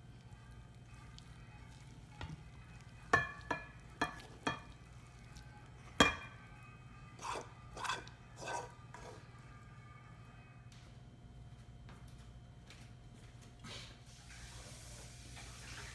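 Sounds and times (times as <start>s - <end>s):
tableware clinking: 6.0s - 6.4s.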